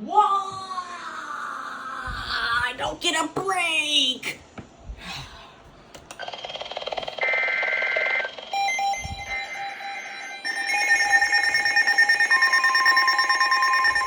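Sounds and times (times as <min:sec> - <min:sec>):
electronic alert alarms beeping: 0:08.4 - 0:14.0.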